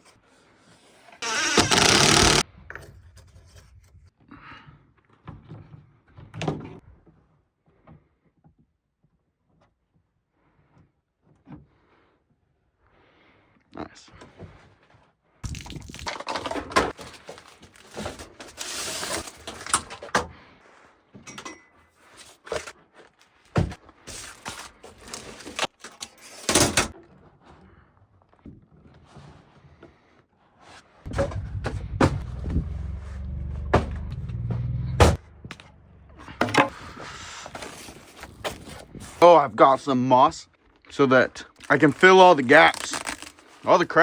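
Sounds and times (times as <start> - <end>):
low rumble: 2.5 - 4.1, 31.1 - 36.4
rustling handling noises: 15.5 - 20.0, 22.0 - 26.4, 36.5 - 39.3, 41.5 - 44.0
knocks and thuds: 31.1 - 33.0, 33.6 - 35.7.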